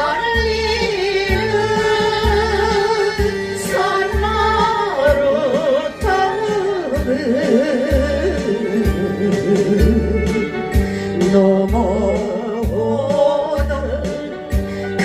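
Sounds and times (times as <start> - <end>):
backing track with steady beat: 0.0 - 15.0
woman singing with vibrato: 0.0 - 15.0.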